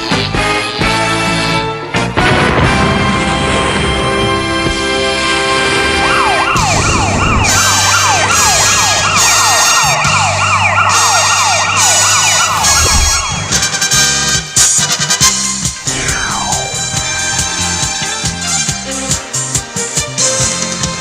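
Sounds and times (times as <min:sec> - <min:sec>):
music: 0:00.0 - 0:21.0
sweeping siren sound effect: 0:05.9 - 0:13.5, 0:15.7 - 0:18.4.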